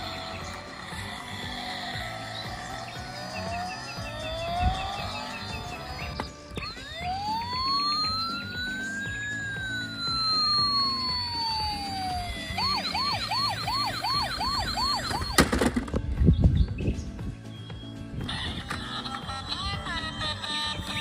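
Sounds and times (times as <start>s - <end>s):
toy electronic siren: 0.0s - 15.8s.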